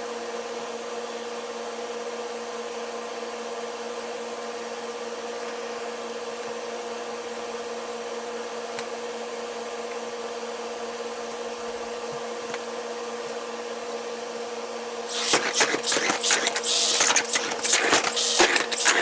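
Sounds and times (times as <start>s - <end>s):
small electric motor humming: 15.1s - 19.0s.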